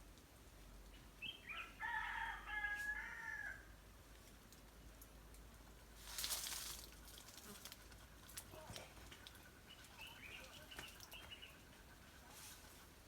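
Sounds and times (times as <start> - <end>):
rooster crowing: 1.6 - 3.7.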